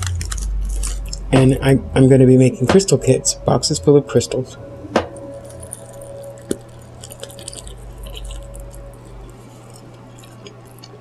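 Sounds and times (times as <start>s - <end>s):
person chewing food: 0.0s - 1.3s, 5.2s - 11.0s
steady low hum: 0.0s - 11.0s.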